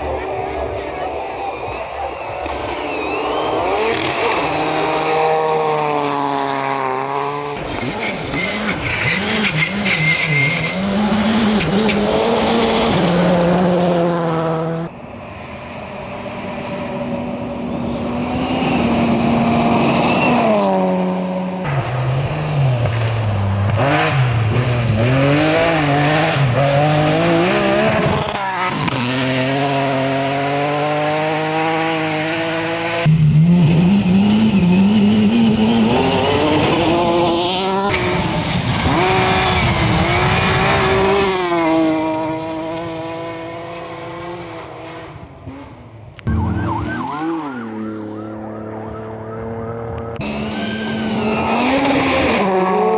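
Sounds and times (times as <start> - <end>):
rally car engines revving: 0.0 - 52.9.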